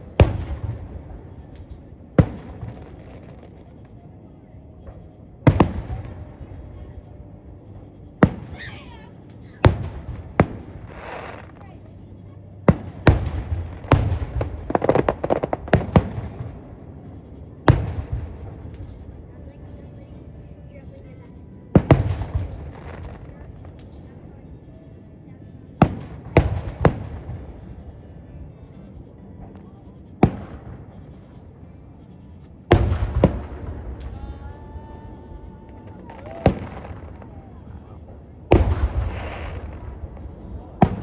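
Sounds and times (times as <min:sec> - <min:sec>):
fireworks bangs: 0:00.0 - 0:04.0, 0:08.2 - 0:11.8, 0:12.7 - 0:20.1, 0:21.0 - 0:24.3, 0:32.2 - 0:41.0
fireworks crackling pops: 0:00.0 - 0:04.0, 0:12.7 - 0:16.6, 0:17.6 - 0:20.2, 0:21.8 - 0:24.3, 0:32.2 - 0:41.0.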